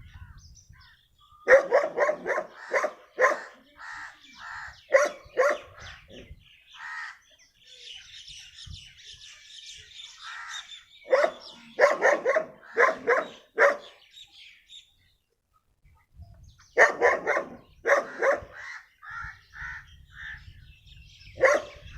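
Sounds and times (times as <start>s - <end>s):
birds chirping: 0.0s - 21.9s
dog barking: 1.5s - 3.6s, 4.9s - 5.8s, 11.1s - 14.0s, 16.8s - 18.6s, 21.4s - 21.9s.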